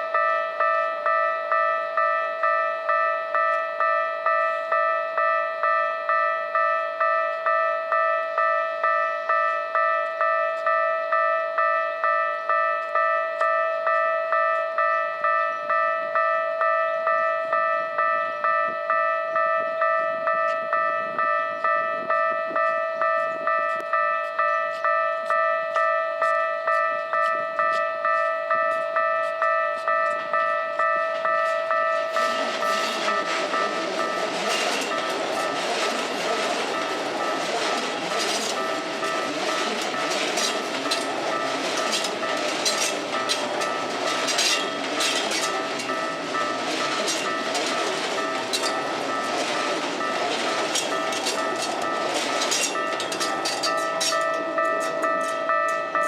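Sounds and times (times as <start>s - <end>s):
level crossing warning bell: 0.0s - 56.0s
approaching train rumble: 28.9s - 56.0s.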